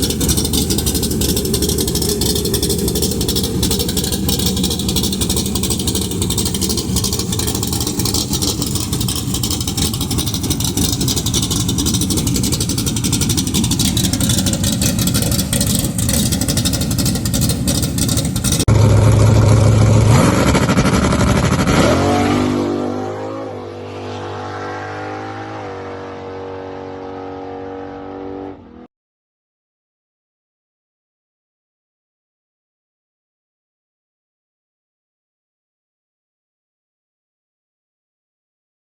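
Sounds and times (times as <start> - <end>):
rough vee eight engine revving: 0.0 - 28.9.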